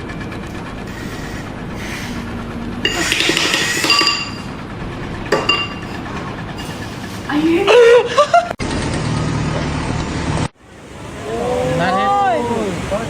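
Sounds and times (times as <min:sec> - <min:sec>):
engine rumble: 0:00.0 - 0:13.0
metallic clanking with ringing tones: 0:02.8 - 0:04.6, 0:05.3 - 0:06.9.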